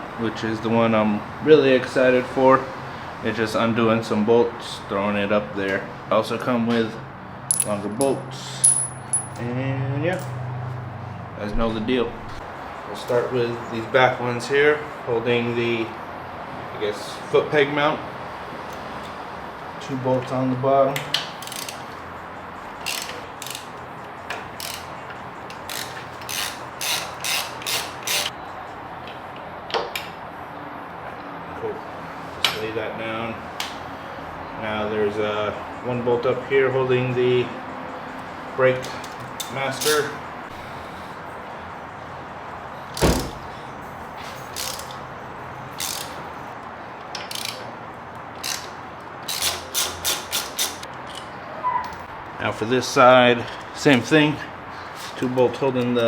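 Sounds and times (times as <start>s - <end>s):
socket ratchet clicking: 7.5s - 7.8s, 21.4s - 21.8s, 22.8s - 23.7s, 24.6s - 24.9s, 25.5s - 28.3s, 44.5s - 45.0s, 45.8s - 46.2s, 47.2s - 47.6s, 48.4s - 50.9s.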